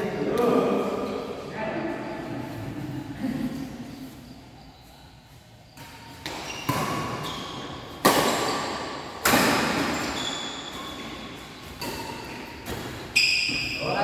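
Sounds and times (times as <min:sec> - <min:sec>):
badminton rackets hitting shuttlecock: 0:05.8 - 0:13.7.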